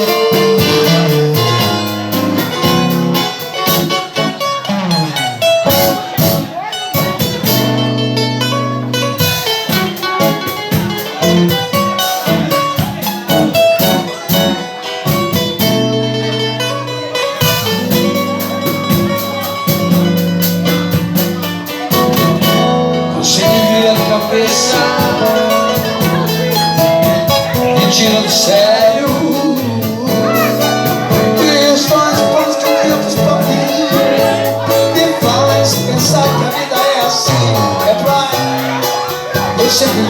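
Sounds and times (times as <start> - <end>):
person singing: 0.0 - 6.7, 21.7 - 40.0
live band with guitar: 0.0 - 40.0.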